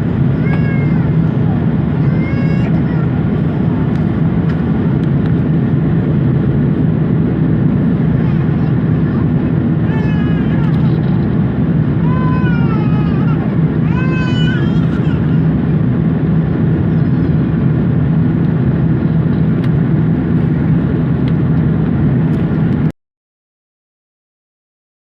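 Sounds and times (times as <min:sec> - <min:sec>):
aircraft cabin engine drone: 0:00.0 - 0:22.9.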